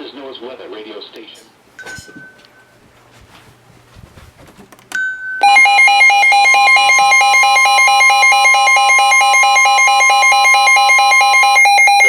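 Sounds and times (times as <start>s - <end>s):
steady warning alarm tone: 5.4s - 12.0s
warbling alert alarm: 5.4s - 12.0s.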